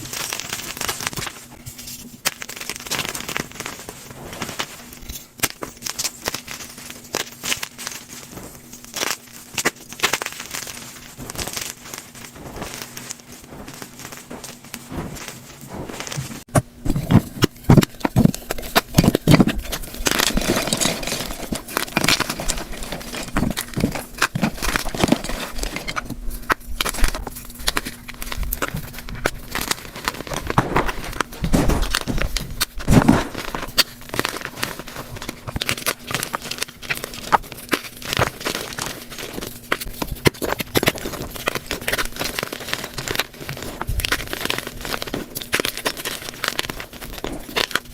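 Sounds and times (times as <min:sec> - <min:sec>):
chalk crunching and crackling: 0:00.0 - 0:47.9.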